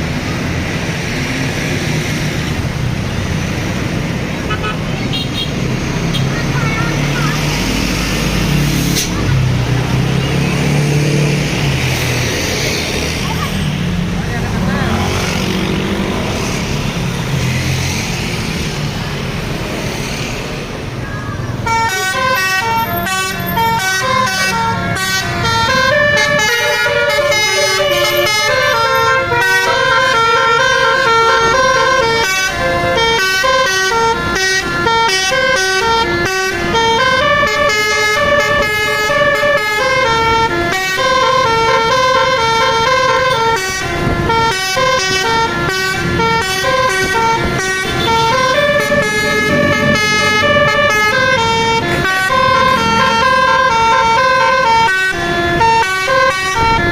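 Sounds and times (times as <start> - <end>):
bus musical air horn melody: 4.4 - 6.3, 21.6 - 56.9.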